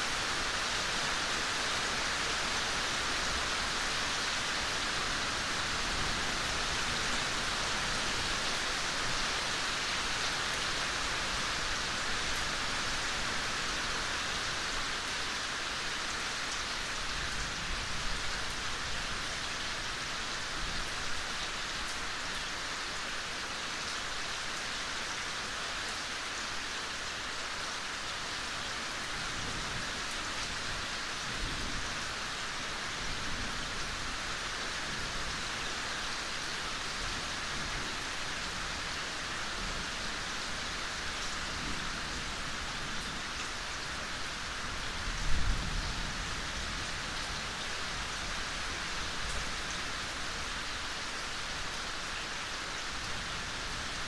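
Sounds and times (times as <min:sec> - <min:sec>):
steady rain hiss: 0:00.0 - 0:54.0.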